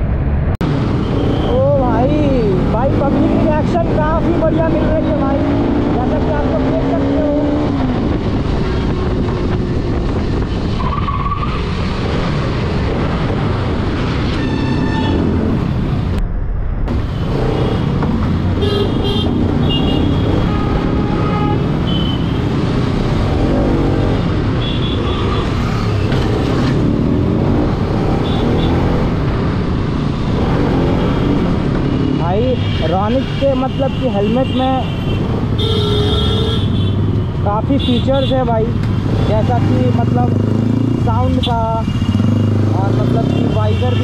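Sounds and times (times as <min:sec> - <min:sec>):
motorcycle engine and road rumble: 0:00.0 - 0:44.0
vehicle horns tooting: 0:14.4 - 0:15.3, 0:18.6 - 0:22.5, 0:24.6 - 0:26.1, 0:32.0 - 0:37.1.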